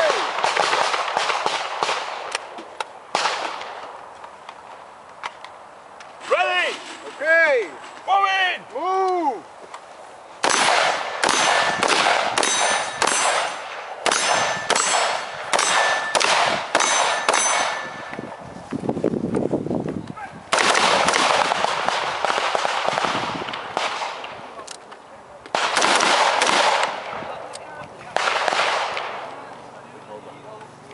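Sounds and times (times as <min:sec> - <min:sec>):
rifle shots: 0:00.1 - 0:02.4, 0:03.1 - 0:03.8, 0:10.4 - 0:18.1, 0:20.5 - 0:24.4, 0:25.5 - 0:27.2, 0:28.1 - 0:29.3
metallic ringing of steel targets: 0:10.4 - 0:18.3.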